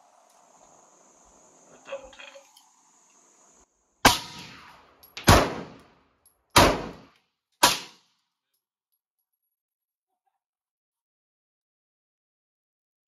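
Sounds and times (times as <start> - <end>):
pistol shots with echo: 4.0 - 5.9, 6.6 - 8.0.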